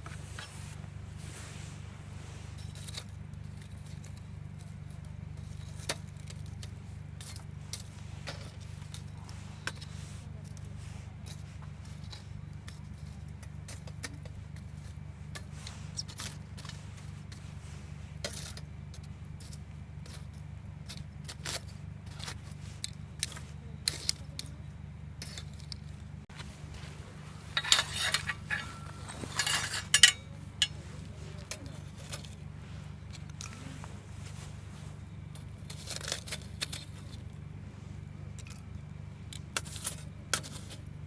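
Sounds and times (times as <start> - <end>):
steady low hum: 0.0 - 41.0
camping gear clicking and clinking: 25.3 - 34.4.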